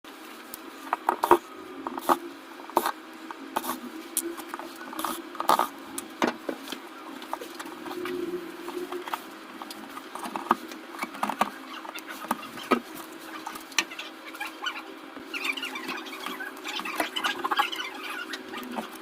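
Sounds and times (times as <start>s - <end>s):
refrigerator fan motor hum: 0.1s - 19.0s
fan clicking and rattling: 0.4s - 14.6s.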